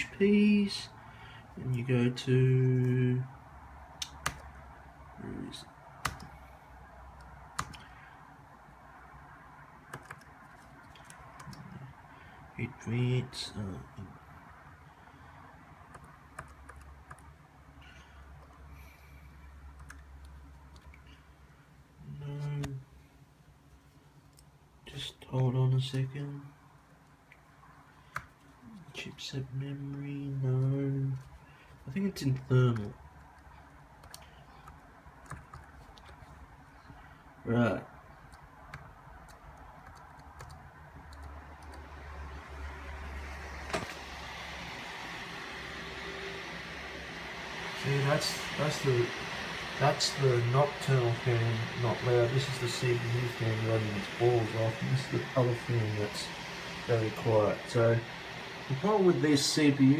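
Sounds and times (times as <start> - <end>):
computer humming: 0.0 - 59.9
keyboard key clicks: 4.0 - 4.5, 6.0 - 6.4.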